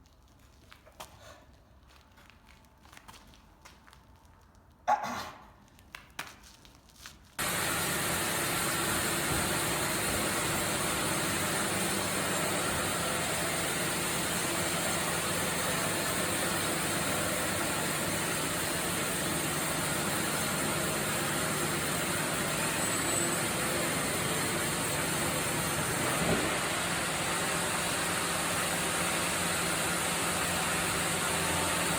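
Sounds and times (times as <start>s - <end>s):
sawmill machinery running: 7.4s - 31.9s.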